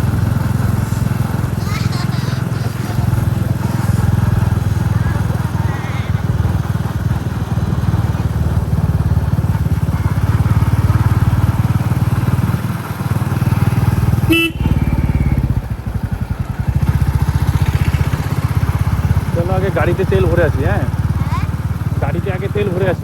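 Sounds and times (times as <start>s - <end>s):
motorcycle engine thumping: 0.0s - 23.0s
horn beep: 14.2s - 15.5s.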